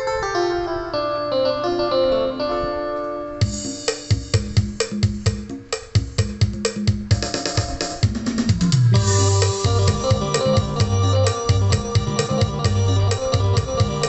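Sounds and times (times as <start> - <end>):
keyboard melody single notes: 0.0 - 4.4, 8.9 - 14.0
drum and bass accompaniment: 3.4 - 14.0.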